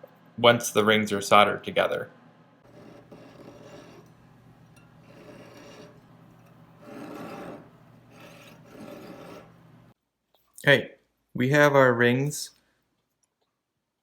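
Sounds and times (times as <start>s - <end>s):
hand file rasping on metal: 2.6s - 9.6s.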